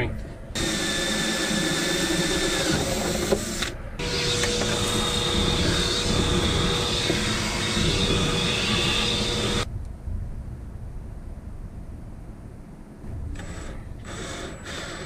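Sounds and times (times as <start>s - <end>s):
power drill driving a screw: 0.6s - 9.7s, 13.4s - 15.0s.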